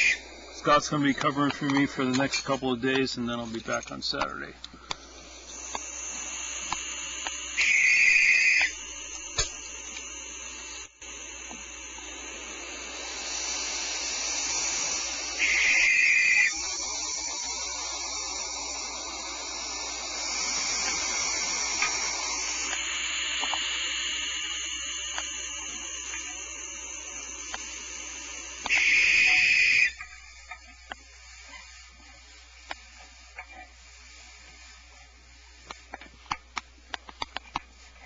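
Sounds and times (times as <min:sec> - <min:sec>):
harsh owl chick calls: 0:00.0 - 0:00.2, 0:07.5 - 0:08.8, 0:13.4 - 0:22.8, 0:28.6 - 0:30.2
owl chicks hissing snores: 0:00.0 - 0:00.6, 0:04.8 - 0:08.8, 0:12.2 - 0:30.6.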